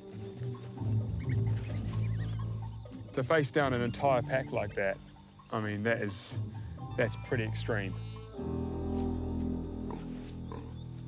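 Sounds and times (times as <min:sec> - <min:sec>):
sustained low chord: 0:06.6 - 0:11.0.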